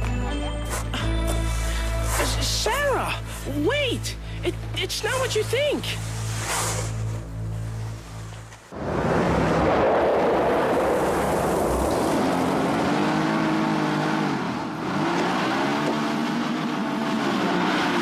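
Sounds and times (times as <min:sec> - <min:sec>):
vehicle engine revving: 0:06.1 - 0:18.0.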